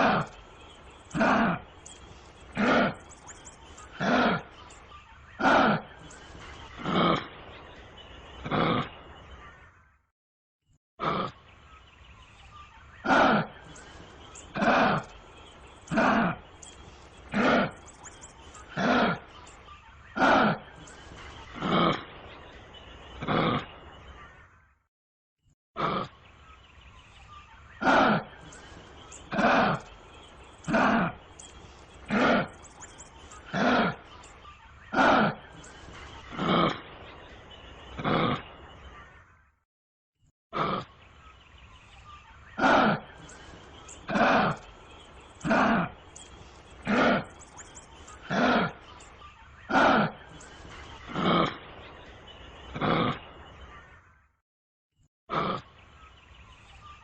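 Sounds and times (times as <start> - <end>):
kangaroo grunting calls: 0.0 - 4.6, 5.3 - 7.4, 8.4 - 9.1, 11.0 - 11.4, 13.0 - 19.4, 20.2 - 22.2, 23.2 - 23.8, 25.8 - 26.2, 27.8 - 34.1, 34.9 - 37.0, 38.0 - 38.6, 40.6 - 41.0, 42.5 - 48.9, 49.7 - 51.8, 52.7 - 53.4, 55.3 - 55.7.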